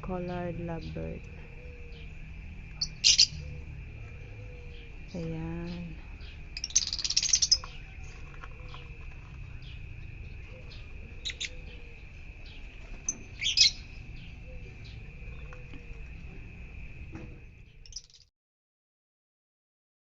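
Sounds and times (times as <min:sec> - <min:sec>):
lovebirds shrill chirping: 0:00.7 - 0:16.2, 0:17.8 - 0:18.3.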